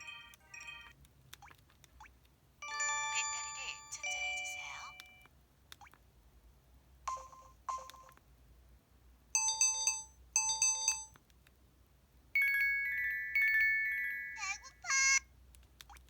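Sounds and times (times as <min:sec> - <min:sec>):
bright chiming tones: 0:02.6 - 0:05.2, 0:12.4 - 0:14.4.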